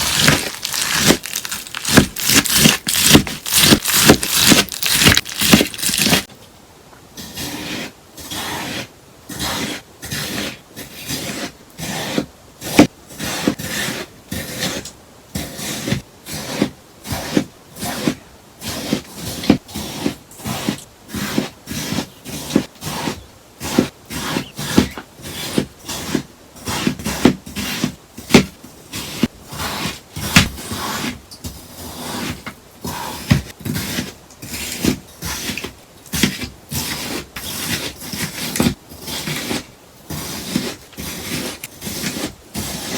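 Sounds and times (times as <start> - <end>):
scissors snipping sponge: 0.0 - 6.3, 33.1 - 42.9.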